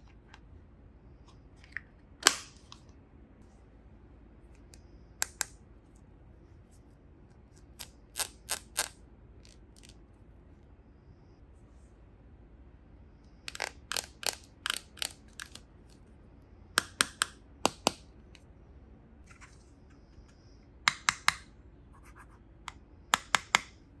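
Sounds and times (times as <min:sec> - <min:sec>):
plastic toy pieces clicking: 0:13.5 - 0:15.6.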